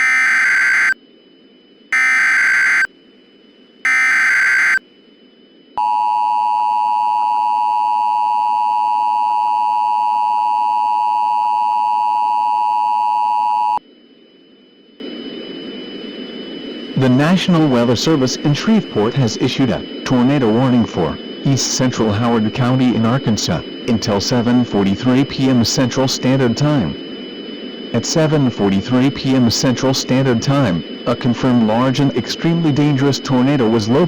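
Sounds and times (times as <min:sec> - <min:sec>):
two-tone attention signal: 0:00.0 - 0:01.0, 0:01.9 - 0:02.9, 0:03.9 - 0:04.8.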